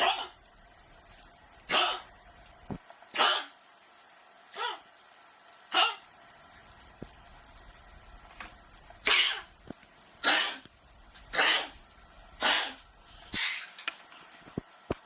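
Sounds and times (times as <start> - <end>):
dog coughing: 1.7 - 2.1, 3.1 - 3.6, 9.0 - 9.5, 10.2 - 10.7, 11.3 - 11.8, 12.4 - 12.8.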